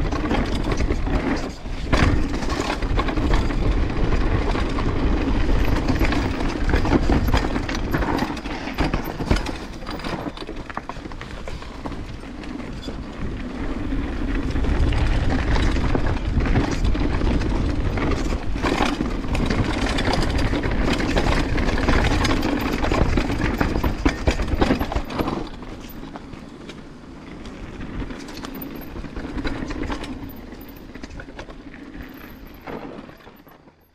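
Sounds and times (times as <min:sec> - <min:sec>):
bike tyre noise: 0:00.0 - 0:33.2
clatter of knocks: 0:05.4 - 0:13.1, 0:15.5 - 0:26.0.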